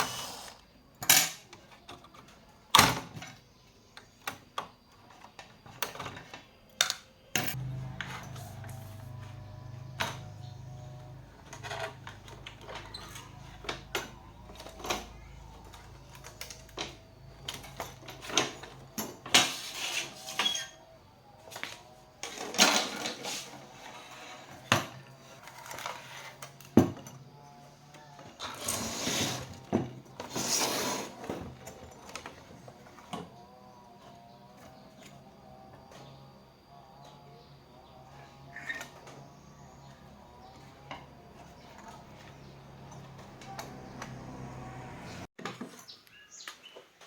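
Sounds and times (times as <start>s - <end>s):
short scraping rasps: 28.4s - 31.5s.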